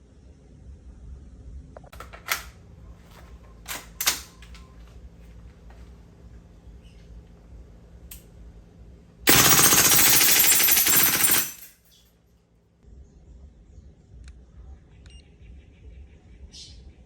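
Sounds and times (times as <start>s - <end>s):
airsoft rifle full-auto burst: 9.3s - 11.7s.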